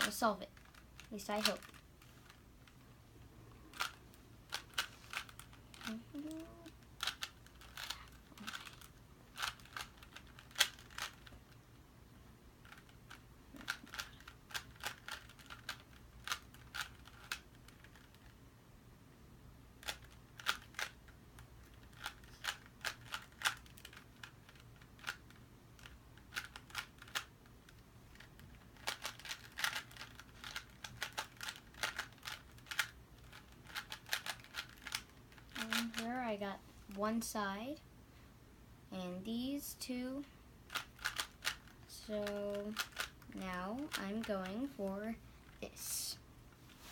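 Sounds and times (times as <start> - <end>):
puzzle cube plastic clicks: 0.0 - 2.9, 3.7 - 11.6, 12.6 - 18.4, 19.8 - 36.1, 40.7 - 44.8.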